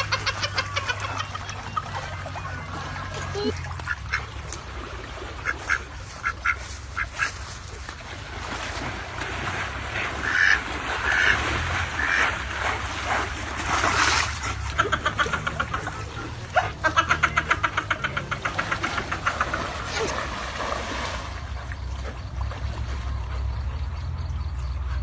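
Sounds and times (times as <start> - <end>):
ducks quacking: 0.0 - 4.4, 5.4 - 7.6, 9.9 - 13.2, 14.3 - 20.4.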